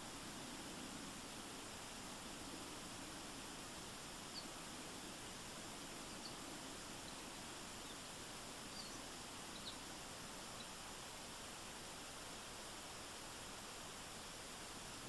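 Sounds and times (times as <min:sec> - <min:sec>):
faint bird chirps: 0:04.3 - 0:04.6, 0:06.0 - 0:10.8.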